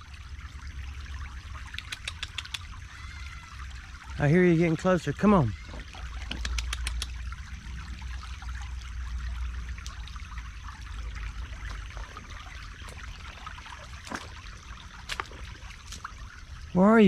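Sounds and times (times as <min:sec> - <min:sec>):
creek water trickling: 0:00.0 - 0:17.0.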